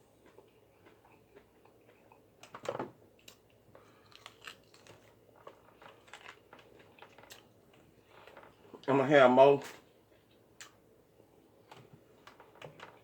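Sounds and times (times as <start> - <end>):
person chewing food: 0.0 - 8.8
food crunch: 0.0 - 8.9.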